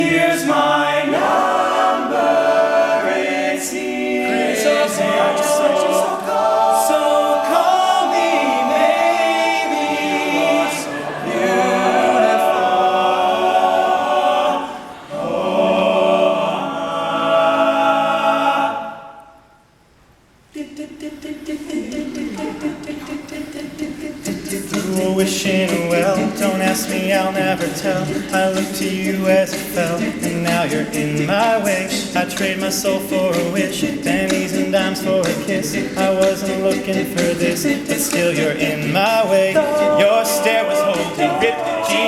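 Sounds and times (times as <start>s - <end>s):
male a cappella group singing: 0.0s - 19.3s, 20.5s - 42.0s.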